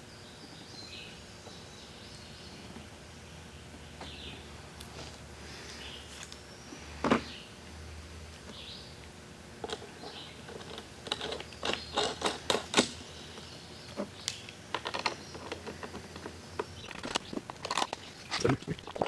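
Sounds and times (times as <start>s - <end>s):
metal hardware clicks and knocks: 9.6s - 13.0s, 14.7s - 18.0s.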